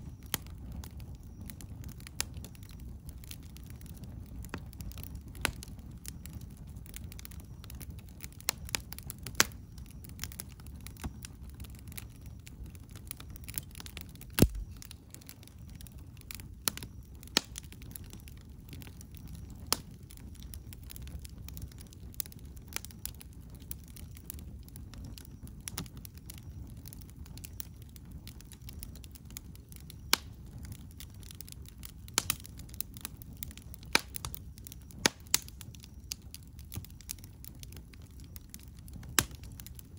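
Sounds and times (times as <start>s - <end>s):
campfire crackling and popping: 0.0s - 39.9s.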